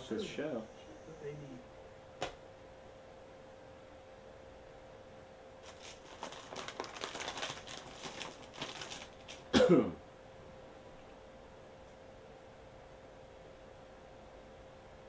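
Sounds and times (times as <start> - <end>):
faint steady hum: 0.0 - 15.0
rustling and crinkling handling noise: 5.6 - 9.6.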